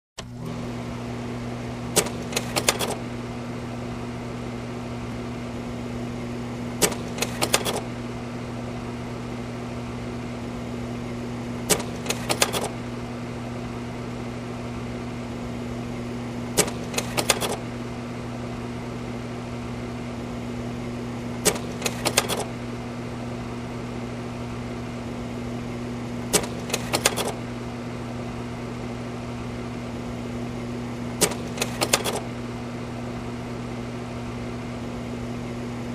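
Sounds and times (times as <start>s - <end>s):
projector fan and motor hum: 0.2s - 35.9s
slide mechanism clicks: 1.9s - 3.0s, 6.8s - 7.8s, 11.6s - 12.8s, 16.6s - 17.6s, 21.4s - 22.5s, 26.3s - 27.4s, 31.2s - 32.3s.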